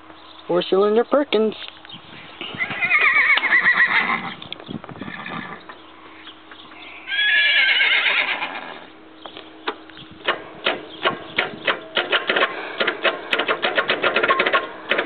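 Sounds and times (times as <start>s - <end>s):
horse whinnying: 2.4s - 4.4s, 5.0s - 5.6s, 6.8s - 8.9s
sharp irregular knocks: 10.2s - 15.0s.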